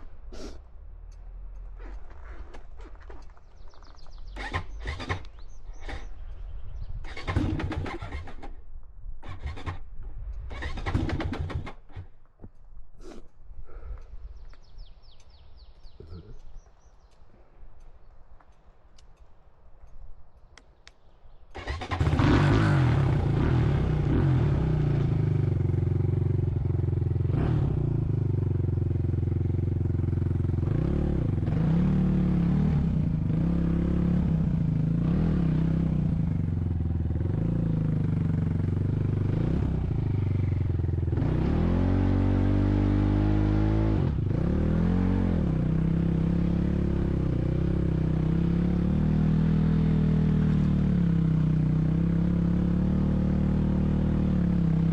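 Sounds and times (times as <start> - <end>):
vehicle engine starting and revving: 4.1 - 12.1, 21.6 - 54.9.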